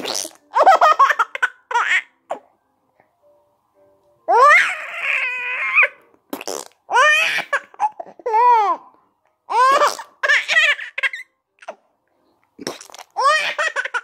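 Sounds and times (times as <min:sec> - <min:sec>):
baby laughing hysterically: 0:00.2 - 0:02.1, 0:06.9 - 0:08.8, 0:09.5 - 0:11.3, 0:13.2 - 0:14.0.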